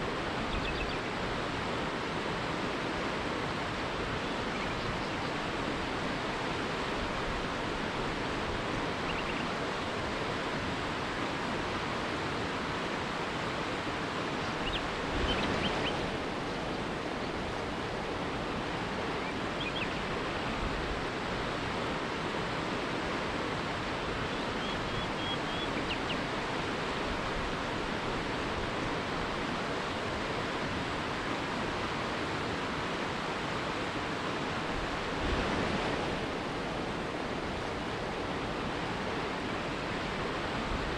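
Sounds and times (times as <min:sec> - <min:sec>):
river rapids rushing: 0:00.0 - 0:40.9
faint bird chirps: 0:24.3 - 0:26.2.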